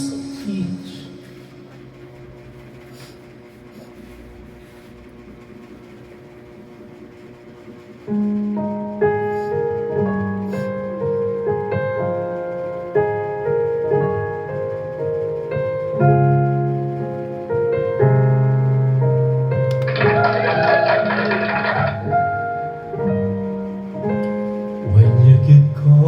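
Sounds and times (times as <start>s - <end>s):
piano ballad chords and melody: 8.0s - 26.0s.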